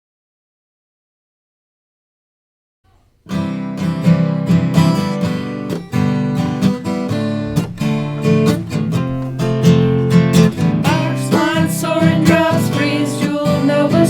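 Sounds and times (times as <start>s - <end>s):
acoustic guitar strumming: 3.2s - 14.0s.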